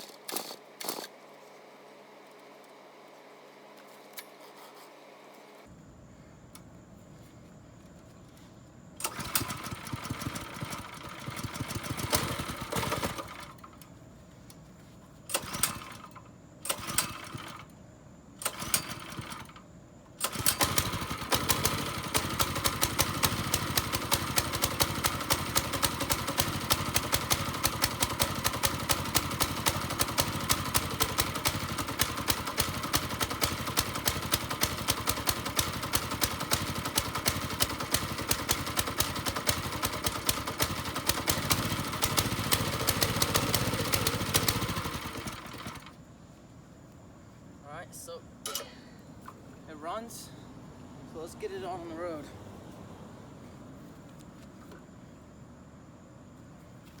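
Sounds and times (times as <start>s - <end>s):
small engine starting and running: 0.0s - 2.8s, 9.0s - 13.9s, 15.3s - 17.7s, 18.4s - 19.6s, 20.2s - 46.0s.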